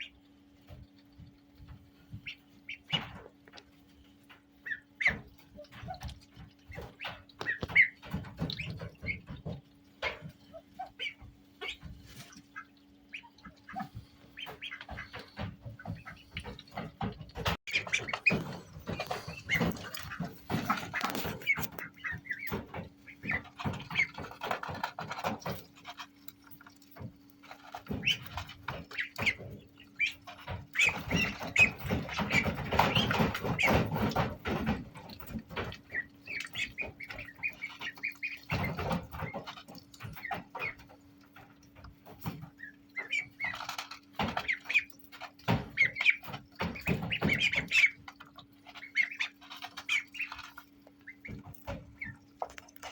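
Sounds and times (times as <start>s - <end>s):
ducklings peeping: 0.0s - 52.9s
scratchy rustling and knocking: 0.6s - 12.8s, 13.4s - 52.9s.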